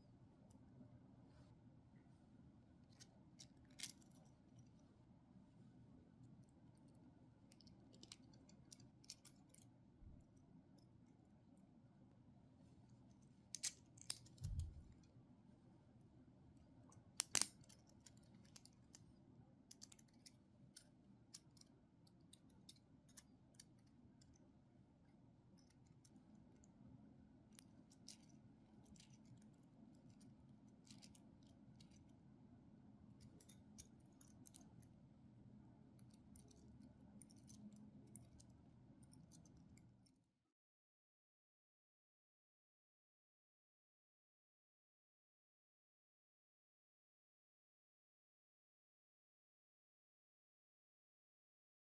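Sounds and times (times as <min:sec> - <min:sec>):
low steady hum: 0:00.0 - 0:40.1.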